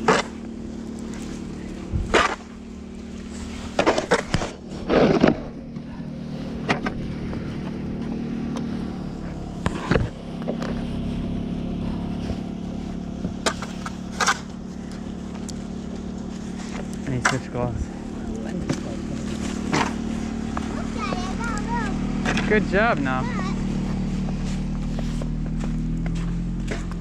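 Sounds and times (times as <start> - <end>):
car engine idling: 0.0 - 27.0
snow shovel scraping pavement: 1.2 - 27.0.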